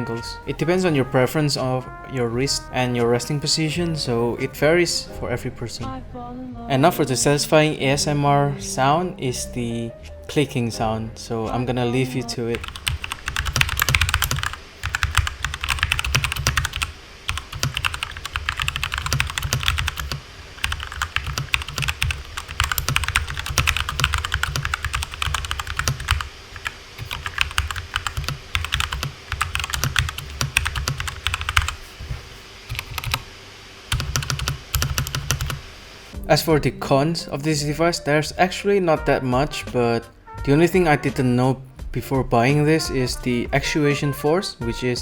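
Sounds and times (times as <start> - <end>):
mechanical keyboard typing: 12.5 - 31.8, 32.7 - 33.2, 33.9 - 35.6.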